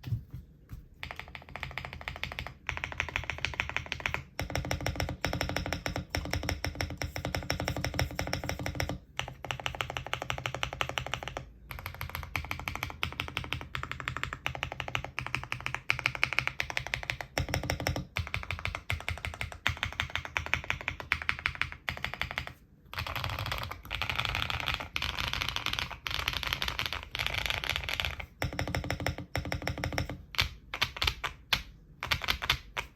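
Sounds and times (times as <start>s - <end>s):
mechanical keyboard typing: 1.0s - 32.9s.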